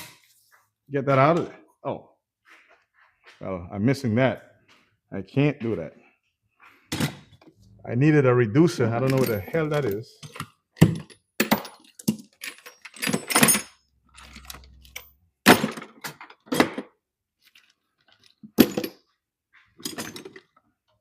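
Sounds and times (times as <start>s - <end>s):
metal tools clinking and knocking: 8.9s - 16.9s, 17.5s - 19.1s, 19.8s - 20.6s.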